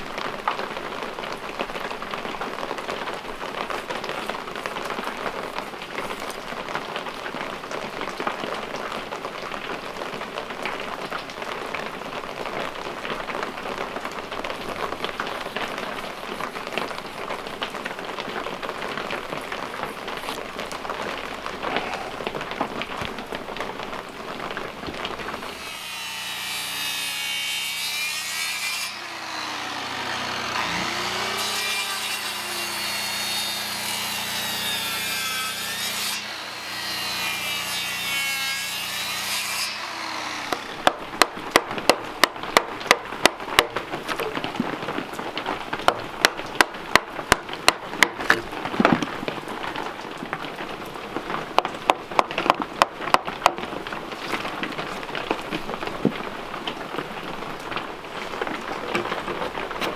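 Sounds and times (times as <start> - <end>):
bandsaw cutting log: 2.6 - 7.4, 14.4 - 22.3, 25.2 - 44.9, 45.8 - 49.8, 51.9 - 56.2, 58.4 - 59.9
sharp sawing strokes: 3.4 - 6.7, 14.5 - 22.0, 25.3 - 41.2.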